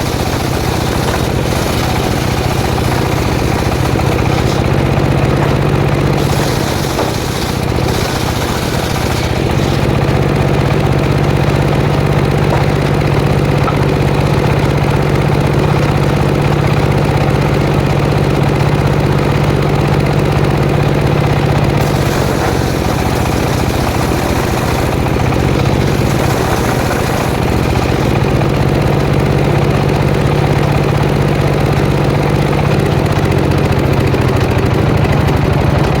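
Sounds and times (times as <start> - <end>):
saw blade cutting wood: 0.0 - 11.5, 21.8 - 29.2
saw petrol engine running: 0.0 - 36.0.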